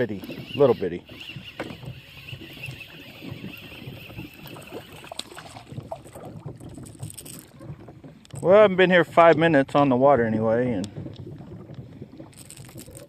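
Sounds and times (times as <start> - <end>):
wind on microphone: 0.0 - 13.0
small clicks and rustles: 3.3 - 8.5, 10.8 - 13.0.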